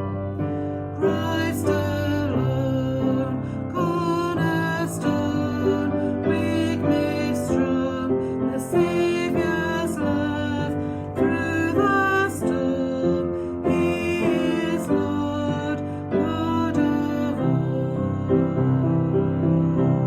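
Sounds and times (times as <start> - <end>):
piano accompaniment: 0.0 - 20.0
woman singing gentle song: 0.8 - 20.0.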